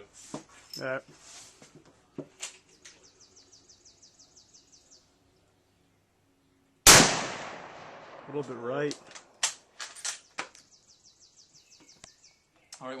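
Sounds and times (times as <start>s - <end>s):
bird chirping: 2.6s - 6.8s, 10.1s - 13.0s.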